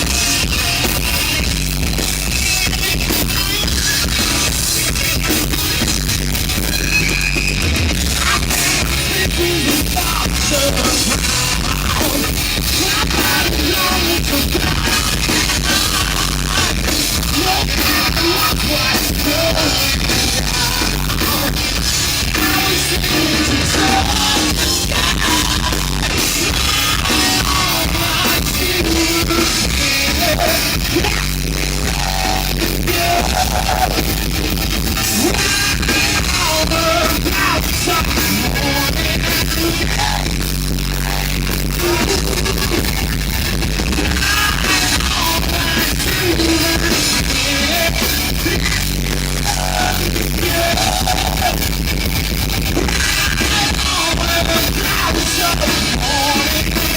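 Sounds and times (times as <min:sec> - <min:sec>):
drum kit: 0:00.0 - 0:56.9
electric guitar: 0:00.0 - 0:56.9
person singing and shouting: 0:02.3 - 0:05.8, 0:06.6 - 0:34.3, 0:35.0 - 0:43.2, 0:43.9 - 0:51.7, 0:52.7 - 0:56.9.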